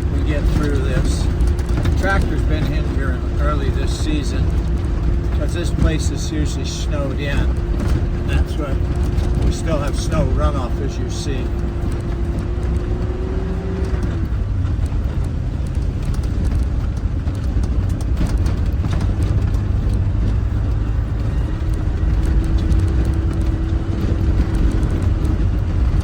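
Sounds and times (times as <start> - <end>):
steady whine: 0.0 - 14.0
off-road vehicle engine rumble: 0.0 - 26.0.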